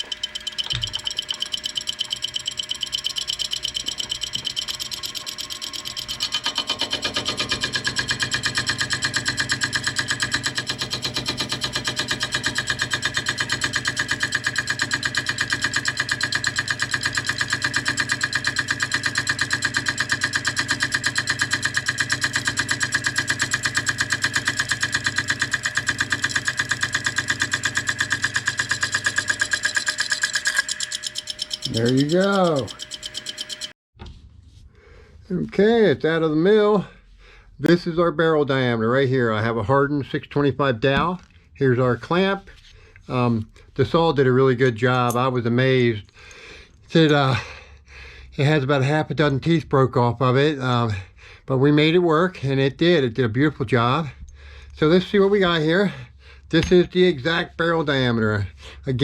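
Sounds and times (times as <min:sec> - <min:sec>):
slitting saw cutting aluminum: 0:00.0 - 0:33.8.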